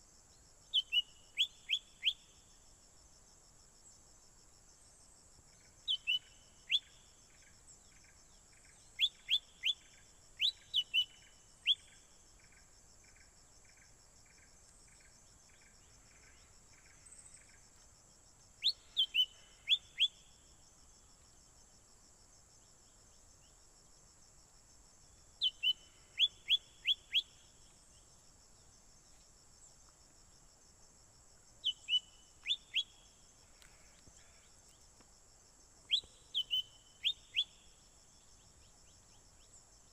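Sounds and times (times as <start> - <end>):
soft pulsed ticking call: 0.6 - 2.7, 5.4 - 20.5, 25.1 - 28.1, 31.6 - 35.1, 35.8 - 39.9
songbird whistled calls: 0.7 - 2.2, 5.9 - 6.9, 9.0 - 9.8, 10.4 - 11.9, 25.4 - 27.3, 31.6 - 33.0, 35.9 - 37.6
high insect drone: 1.2 - 39.9.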